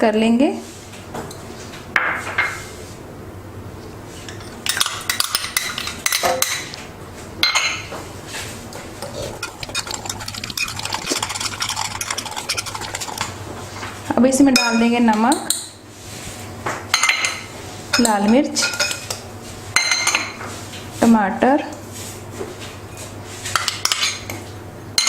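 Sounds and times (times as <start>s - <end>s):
spoon clinking against bowl: 9.0s - 13.3s.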